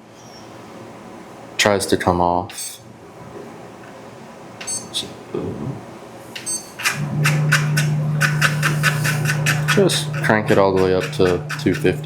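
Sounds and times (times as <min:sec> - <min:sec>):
printer fans humming: 0:03.0 - 0:12.0
fast run of clicks: 0:06.8 - 0:12.0.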